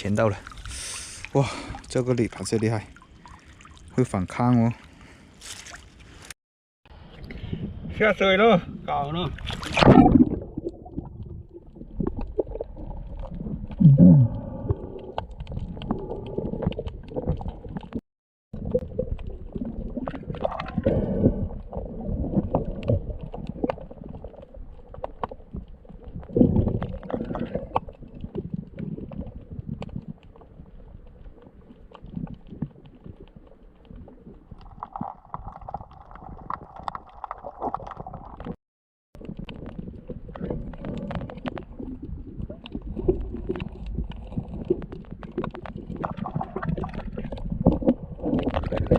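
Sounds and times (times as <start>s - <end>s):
underwater gurgling and sloshing: 0.0s - 18.0s, 18.6s - 48.9s
small underwater clicks and knocks: 14.6s - 18.0s, 21.5s - 38.6s, 39.2s - 48.9s.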